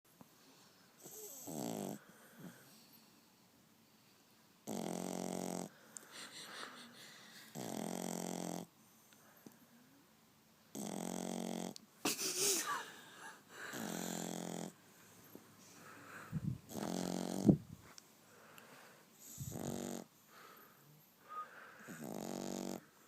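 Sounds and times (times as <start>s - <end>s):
puppy snoring: 1.0s - 2.8s, 4.6s - 5.8s, 7.4s - 8.8s, 10.7s - 11.8s, 13.6s - 14.8s, 15.8s - 17.7s, 19.2s - 20.6s, 21.8s - 23.0s
faint breathing: 5.7s - 7.6s, 12.7s - 16.7s, 17.8s - 22.2s.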